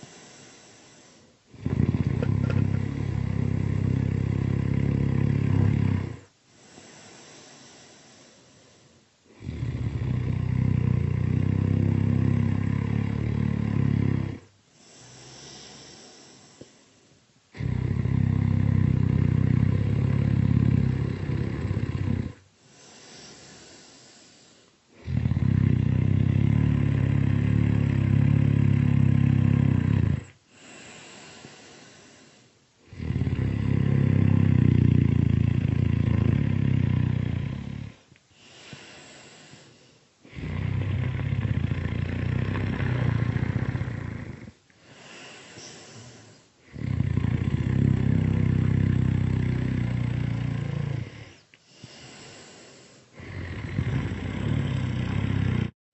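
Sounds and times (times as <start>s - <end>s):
breathy breath: 0.0s - 2.8s, 6.5s - 9.4s, 14.6s - 17.3s, 22.6s - 25.3s, 30.5s - 32.6s, 38.3s - 41.0s, 42.1s - 47.6s, 50.8s - 55.4s
loud rumbling snoring: 1.5s - 6.3s, 9.3s - 16.4s, 17.5s - 23.8s, 24.9s - 31.2s, 32.9s - 39.1s, 40.3s - 55.8s.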